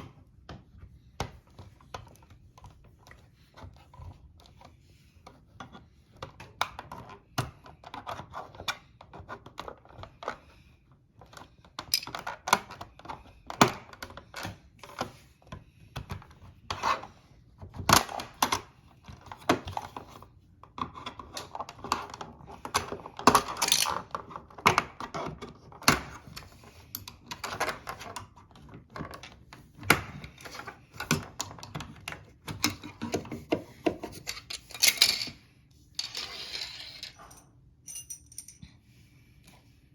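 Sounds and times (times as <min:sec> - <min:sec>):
clicks and taps of small parts: 0:11.2 - 0:15.1.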